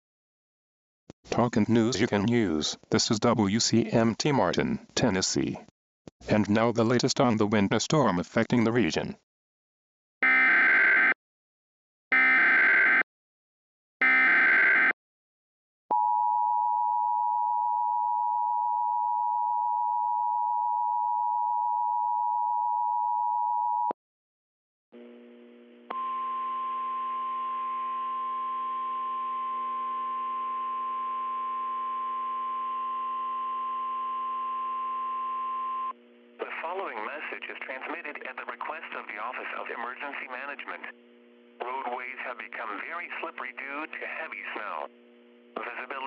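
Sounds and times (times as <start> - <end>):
low hum with faint static: 36.0 - 46.0.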